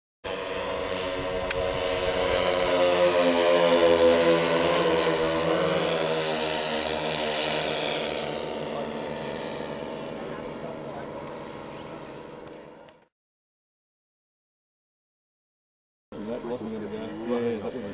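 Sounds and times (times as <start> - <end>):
model airplane flying past: 0.2 - 13.1, 16.2 - 17.9.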